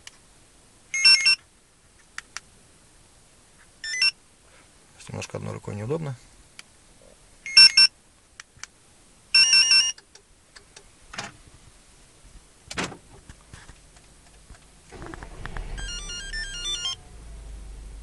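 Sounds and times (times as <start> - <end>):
car engine starting and idling: 14.8 - 18.0
key fob beeping melody: 15.7 - 17.0
stepped electronic chime: 15.7 - 17.0.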